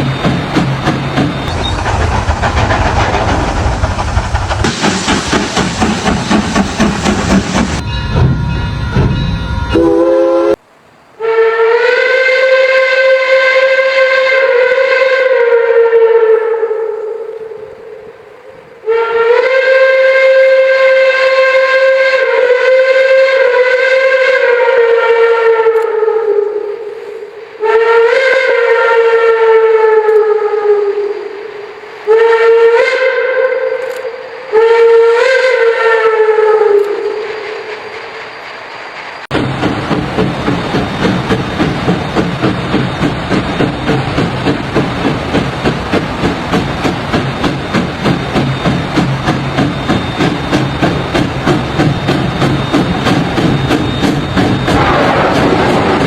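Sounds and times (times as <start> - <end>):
steam rushing out: 0.0 - 7.9, 36.9 - 56.0
steam whistle blasts: 7.8 - 10.6, 11.2 - 37.6, 49.7 - 56.0.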